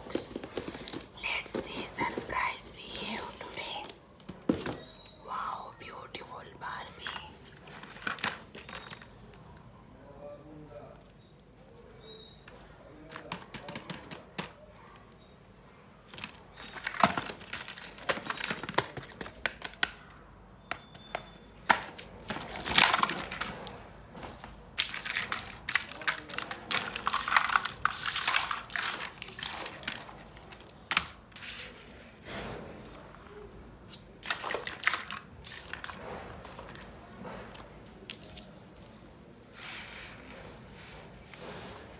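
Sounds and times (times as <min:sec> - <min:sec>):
packaging crinkling: 0:00.0 - 0:04.0
plastic pieces clicking and tapping: 0:16.1 - 0:23.5.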